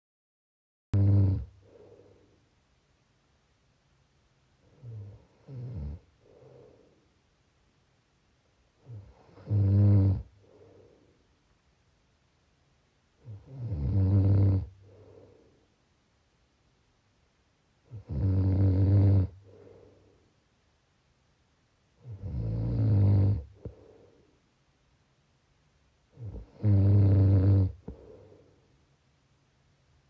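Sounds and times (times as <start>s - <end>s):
person snoring: 1.0s - 2.2s, 4.6s - 7.0s, 8.8s - 11.0s, 13.2s - 15.4s, 17.9s - 19.9s, 22.0s - 24.1s, 26.1s - 28.4s
breathy breath: 1.6s - 2.4s, 6.2s - 7.2s, 10.3s - 11.3s, 14.8s - 15.8s, 19.4s - 20.4s, 23.5s - 24.4s, 27.8s - 28.8s.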